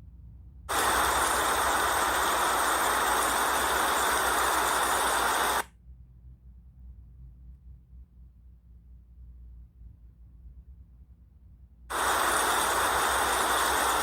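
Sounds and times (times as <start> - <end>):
steady rain-like hiss: 0.7 - 5.6, 11.9 - 14.0.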